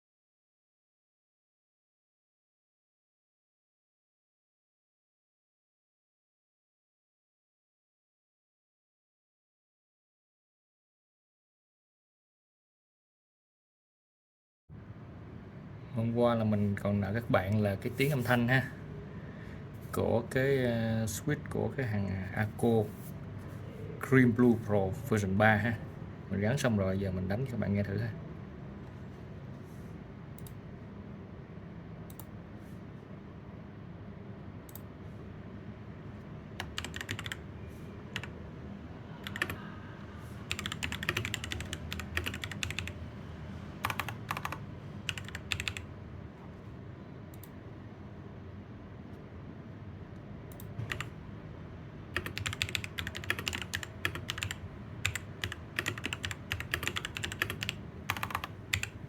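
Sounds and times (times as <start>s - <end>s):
typing on mechanical keyboard: 36.6s - 37.4s, 38.1s - 38.3s, 39.2s - 39.6s, 40.5s - 43.0s, 43.8s - 45.9s, 50.8s - 51.1s, 52.2s - 59.0s.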